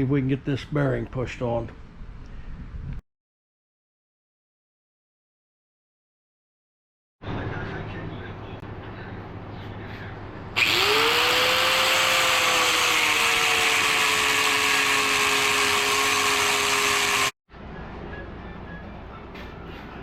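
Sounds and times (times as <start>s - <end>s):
angle grinder running: 10.6s - 17.4s.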